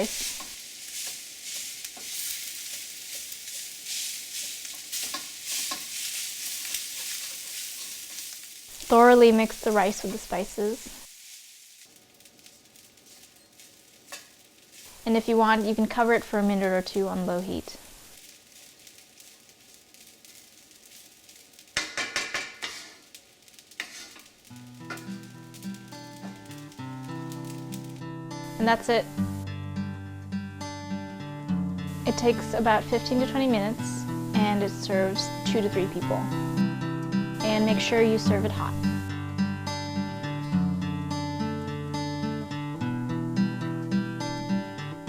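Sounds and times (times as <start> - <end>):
utensil scraping and knocking wok: 0.0 - 28.0
rice sizzling in oil: 0.0 - 29.5, 31.8 - 44.6.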